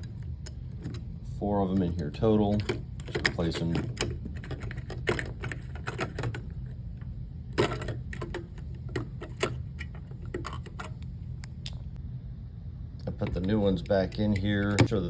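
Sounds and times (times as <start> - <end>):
steady low hum: 0.0 - 15.0
batteries clicking against plastic holder: 13.2 - 15.0.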